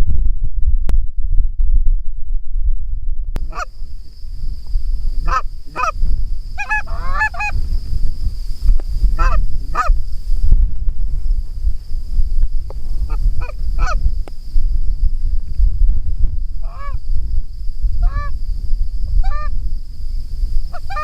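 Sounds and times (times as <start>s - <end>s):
steady low rumble: 0.0s - 21.0s
goose honks: 3.5s - 3.7s, 5.2s - 6.0s, 6.6s - 7.6s, 9.2s - 9.9s, 13.1s - 14.0s, 16.6s - 17.0s, 18.0s - 18.3s, 19.2s - 19.5s, 20.7s - 21.0s.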